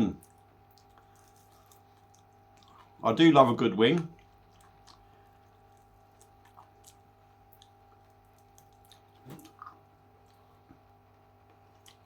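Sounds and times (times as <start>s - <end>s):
low steady hum: 0.0s - 12.0s
chewing and wet mouth clicks: 0.2s - 3.0s, 4.0s - 10.8s, 11.5s - 12.0s.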